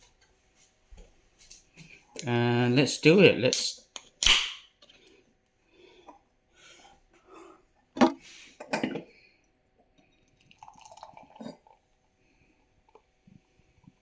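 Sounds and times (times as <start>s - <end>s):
beer bottle opening crack and hiss: 3.6s - 4.7s
beer pouring into a glass: 9.8s - 12.4s.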